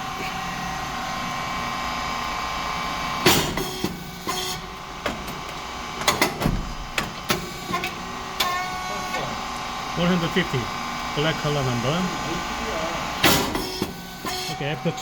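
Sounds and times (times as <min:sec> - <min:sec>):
machine humming: 0:00.0 - 0:15.0.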